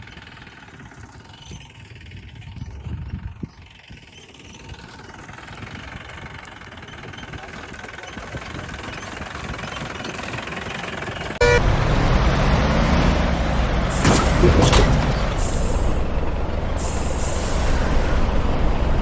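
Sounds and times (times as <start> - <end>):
heavy vehicle engine rumbling: 0.0 - 19.0
short beep: 11.4 - 11.6
short high hisses: 16.8 - 17.7.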